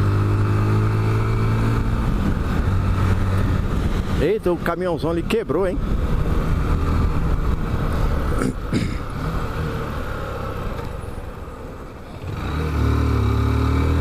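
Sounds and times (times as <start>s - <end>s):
motorcycle engine accelerating: 0.0s - 4.3s, 5.8s - 11.1s, 12.1s - 14.0s
road noise: 0.0s - 14.0s.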